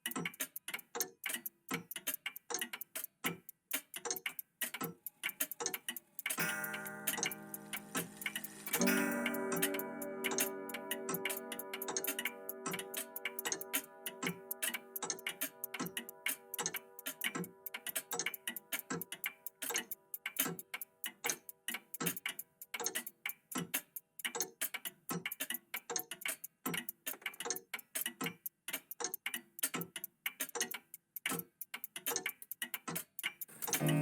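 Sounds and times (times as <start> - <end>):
clocks ticking: 0.0 - 34.0
clock chime ringing: 6.4 - 16.2.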